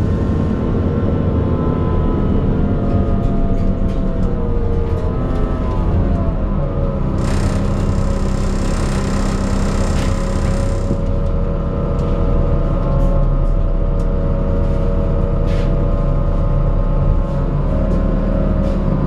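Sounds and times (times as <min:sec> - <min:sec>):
bus engine rumble: 0:00.0 - 0:07.2, 0:11.0 - 0:18.8.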